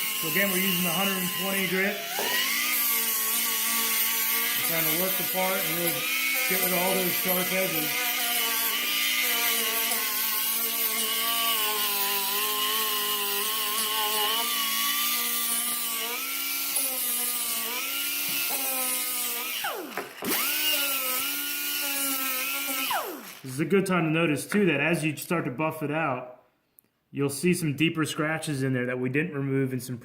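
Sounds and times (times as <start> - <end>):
electric grinder on metal: 0.0 - 23.6.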